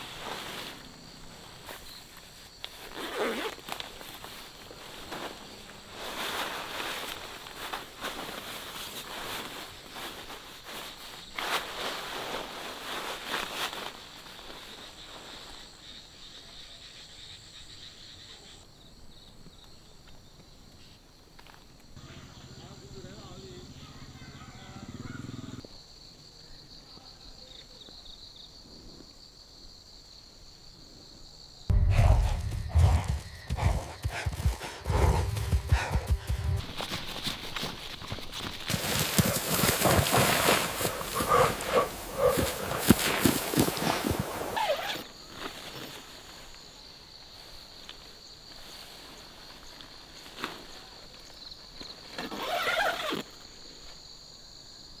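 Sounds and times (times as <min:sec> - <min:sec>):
crickets chirring: 0:00.0 - 0:55.0
short low-pitched sound: 0:31.7 - 0:36.9
sharp knock: 0:31.7 - 0:37.0.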